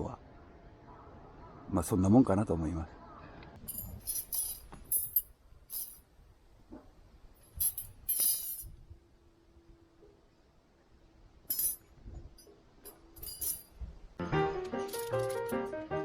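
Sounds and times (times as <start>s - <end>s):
small hard items clinking: 3.6s - 6.0s, 7.4s - 8.7s, 12.4s - 13.8s, 14.6s - 15.6s.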